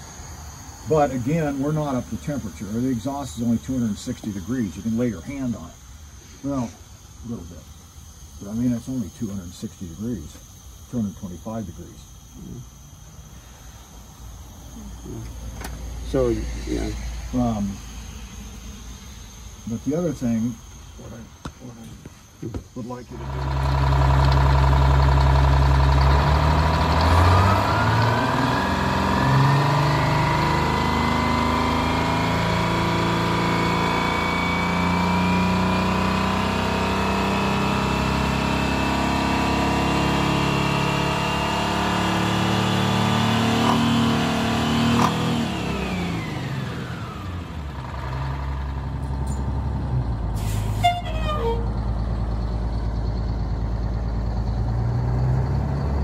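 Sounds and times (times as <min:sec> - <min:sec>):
diesel engine revving: 0:23.0 - 0:56.0
sharp hiss with falling squeak: 0:50.3 - 0:51.8.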